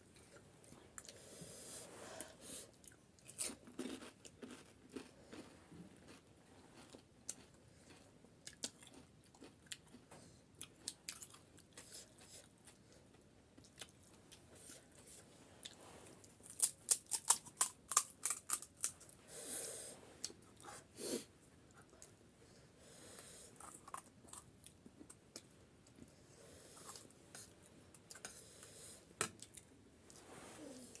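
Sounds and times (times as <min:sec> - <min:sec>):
crisp food crunching: 0:03.2 - 0:06.2, 0:16.5 - 0:19.0.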